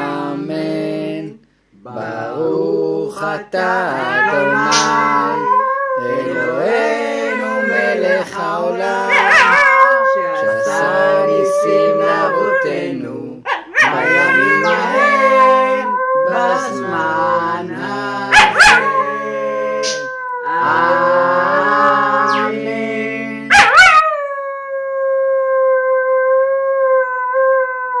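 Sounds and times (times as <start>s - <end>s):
person singing: 0.0s - 23.8s
dog howling: 3.2s - 28.0s.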